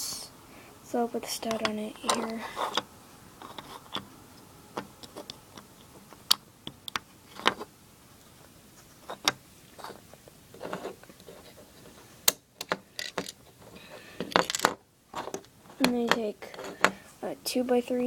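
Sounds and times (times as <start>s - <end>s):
plastic bricks clicking and rattling: 12.6s - 13.4s, 14.2s - 17.0s.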